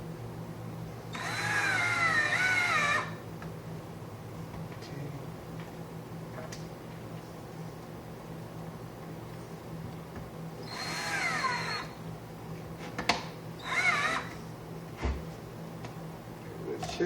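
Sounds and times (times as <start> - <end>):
electric screwdriver motor whine: 1.1 - 3.2, 10.6 - 12.0, 13.6 - 14.4.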